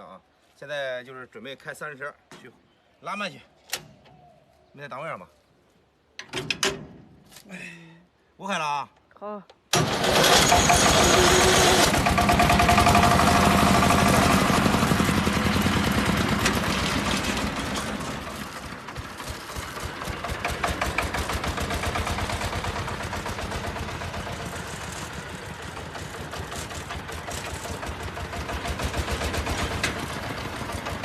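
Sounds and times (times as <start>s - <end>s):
three-wheeler engine running: 9.7s - 31.0s.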